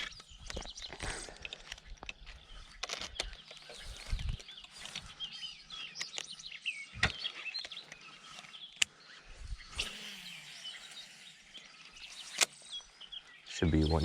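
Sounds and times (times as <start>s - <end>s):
birds chirping: 0.0s - 14.0s
sharp clicks: 11.6s - 12.7s.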